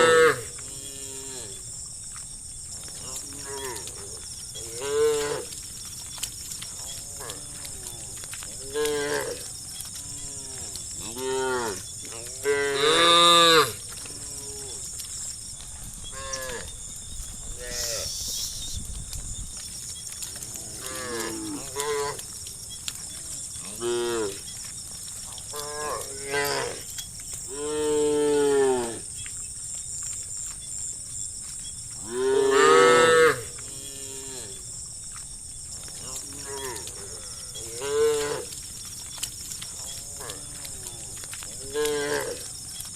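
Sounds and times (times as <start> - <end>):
cows mooing: 0.0 - 1.6, 3.0 - 5.6, 6.8 - 15.0, 20.4 - 22.4, 23.1 - 24.5, 25.5 - 26.9, 27.5 - 29.1, 32.0 - 34.6, 36.0 - 38.6, 39.7 - 42.5.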